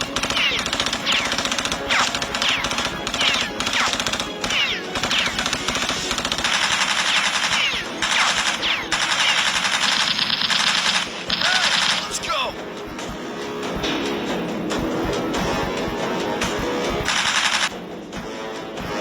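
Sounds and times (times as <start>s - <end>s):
automatic gunfire bursts: 0.0s - 12.4s, 17.1s - 17.8s.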